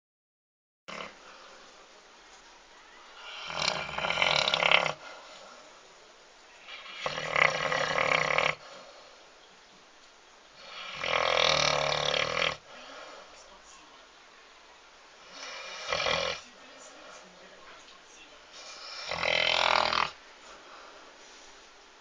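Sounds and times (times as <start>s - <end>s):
large dog snoring: 0.9s - 1.3s, 3.2s - 5.1s, 6.7s - 8.8s, 10.6s - 12.6s, 15.3s - 16.4s, 18.6s - 20.2s.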